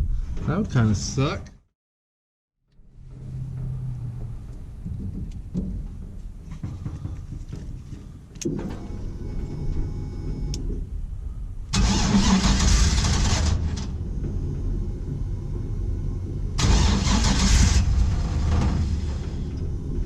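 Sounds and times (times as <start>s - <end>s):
engine cranking on starter: 11.7s - 20.0s.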